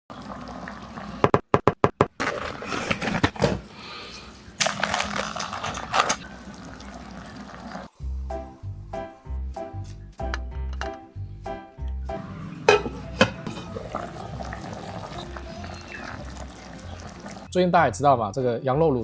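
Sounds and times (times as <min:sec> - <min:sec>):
liquid pouring or bubbling: 0:04.8 - 0:07.9, 0:12.2 - 0:17.5.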